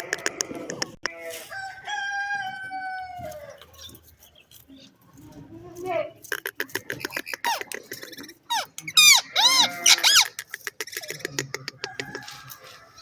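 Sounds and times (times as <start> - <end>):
parrot clicking and chirping: 6.2 - 12.2
parrot squawking: 6.4 - 11.3.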